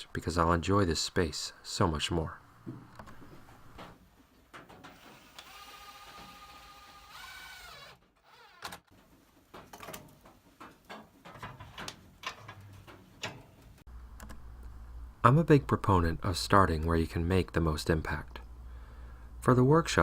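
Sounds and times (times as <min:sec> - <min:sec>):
small motor whirring: 0:04.9 - 0:08.8.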